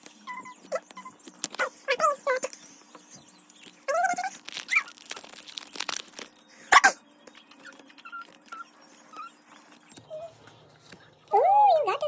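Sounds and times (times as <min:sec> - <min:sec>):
foil wrapper crinkling and tearing: 0:01.3 - 0:01.7, 0:03.6 - 0:06.4.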